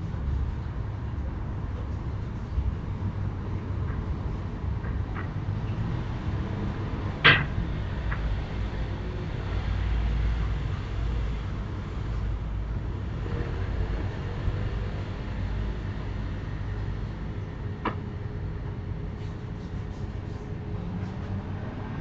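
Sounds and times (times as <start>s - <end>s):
low outdoor rumble: 0.0s - 22.0s
metal being struck: 7.2s - 7.6s.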